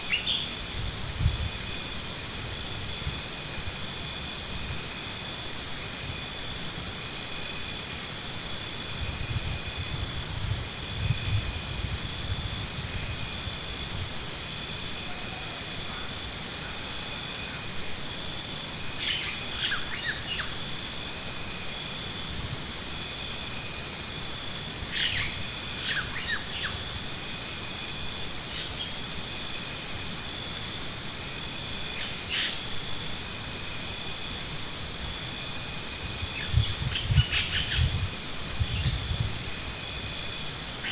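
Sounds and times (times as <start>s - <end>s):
insects chirping in trills: 0.0s - 40.9s.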